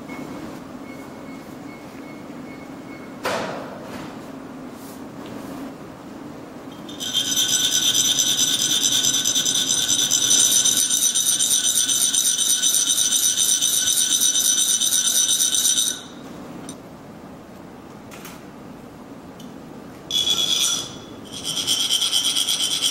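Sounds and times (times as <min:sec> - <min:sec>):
metal rod rasping on ridged funnel: 0:06.8 - 0:16.1.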